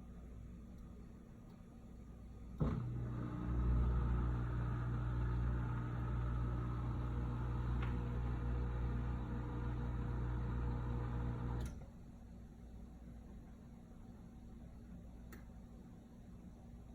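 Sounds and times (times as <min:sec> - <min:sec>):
dishwasher motor humming: 0:02.6 - 0:11.8.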